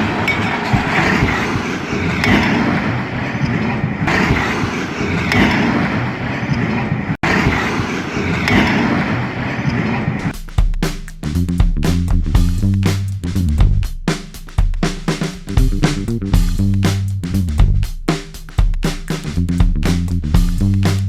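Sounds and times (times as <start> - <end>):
noisy background: 0.0 - 10.4
music: 10.3 - 21.0
vehicle engine running: 15.5 - 17.8, 19.3 - 21.0.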